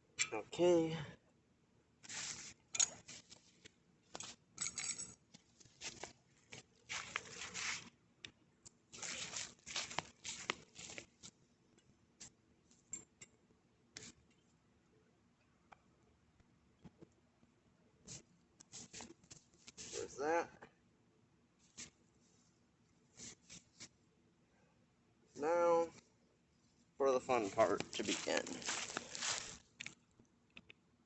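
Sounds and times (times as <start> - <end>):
tools scraping and rustling: 2.0 - 7.9.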